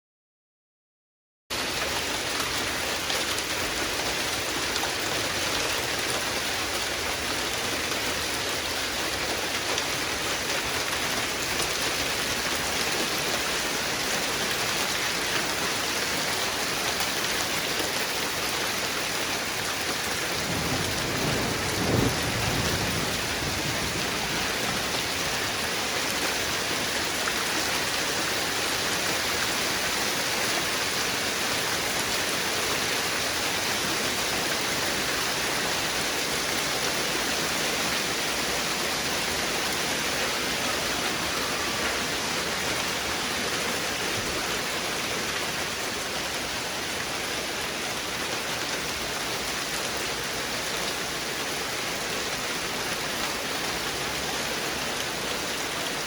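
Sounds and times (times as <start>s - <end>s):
thunder rumble: 20.3s - 24.9s.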